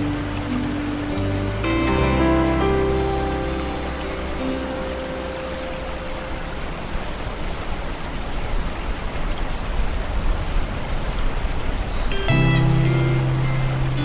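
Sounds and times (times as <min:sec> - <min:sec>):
soft music with held notes: 0:00.0 - 0:07.1, 0:12.1 - 0:14.0
rain on water: 0:00.0 - 0:14.0.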